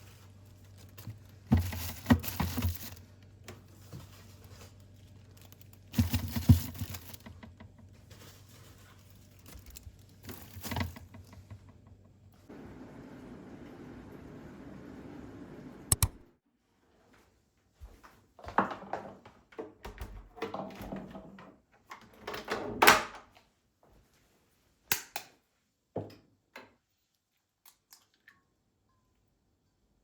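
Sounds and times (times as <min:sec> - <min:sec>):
objects clattering: 0:00.2 - 0:12.2
switch click: 0:15.9 - 0:16.2.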